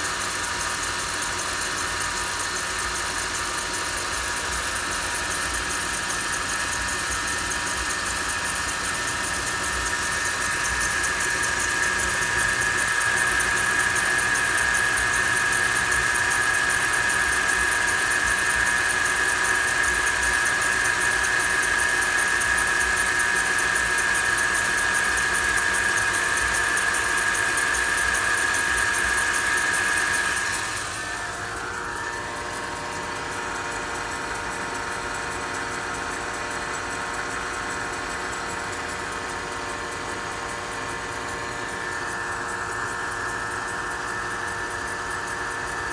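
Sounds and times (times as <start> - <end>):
car engine idling: 30.4 - 35.7.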